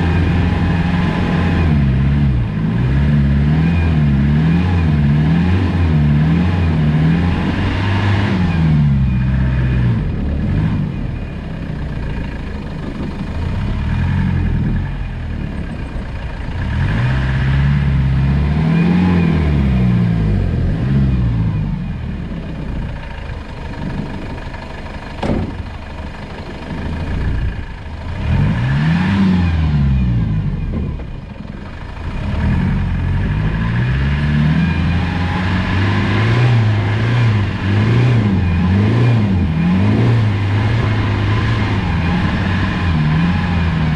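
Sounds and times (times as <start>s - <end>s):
diesel engine revving: 0.0s - 43.9s
sharp knock: 25.2s - 25.7s.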